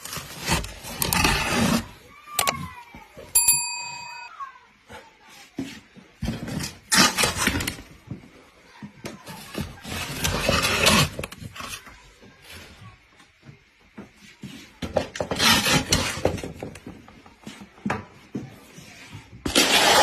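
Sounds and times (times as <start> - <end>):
objects knocking and clattering: 14.8 - 18.4.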